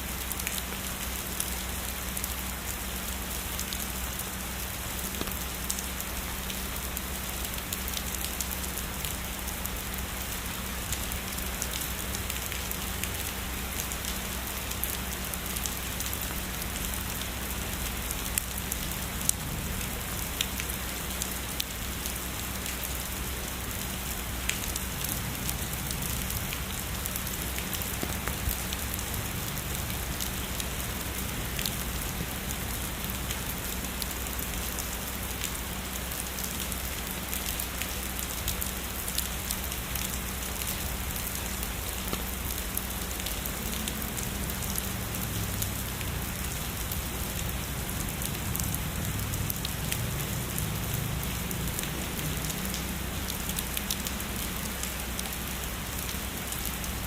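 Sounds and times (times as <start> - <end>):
heavy rainfall: 0.0 - 57.0
raindrop hits: 25.8 - 33.4.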